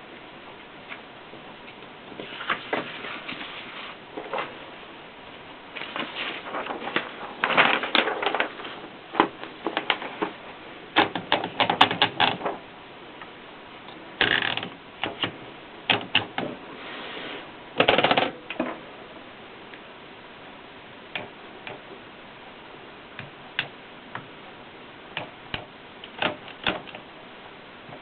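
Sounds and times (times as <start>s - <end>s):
manual typewriter typing: 11.0s - 12.5s, 14.2s - 16.4s, 17.8s - 18.4s, 25.2s - 27.0s.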